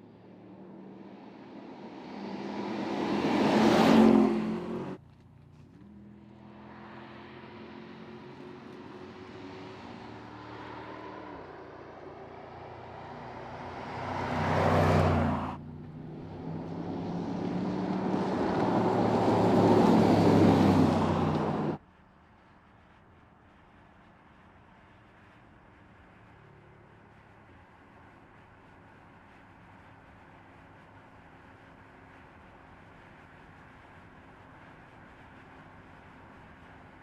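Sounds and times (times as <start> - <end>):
car engine accelerating: 0.2 - 21.8.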